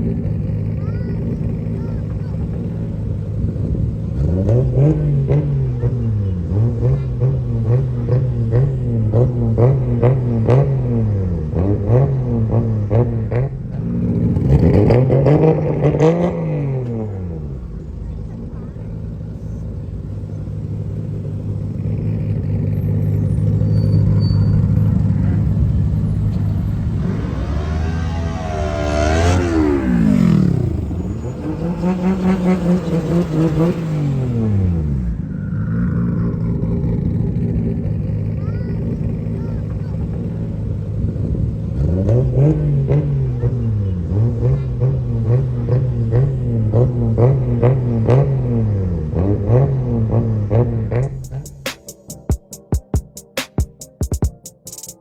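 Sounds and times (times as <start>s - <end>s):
car engine revving: 0.0s - 53.9s.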